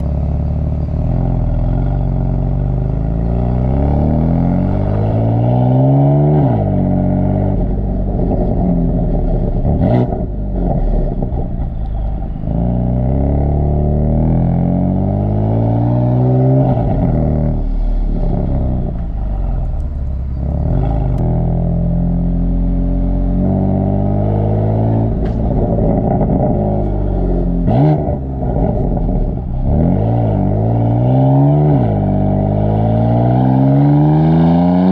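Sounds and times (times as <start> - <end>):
car exhaust accelerating through gears: 0.0 - 34.9
exhaust crack on upshift: 24.9 - 30.4.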